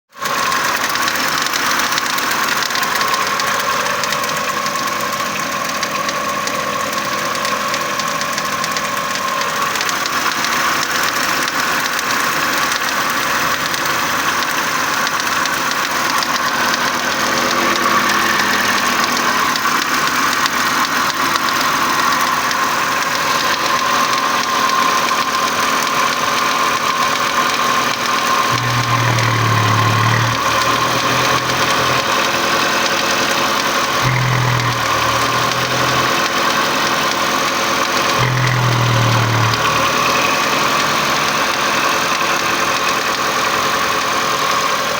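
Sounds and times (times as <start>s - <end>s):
engine rattle: 0.1s - 44.9s
car engine idling: 0.2s - 44.9s
steady whine: 28.4s - 41.4s.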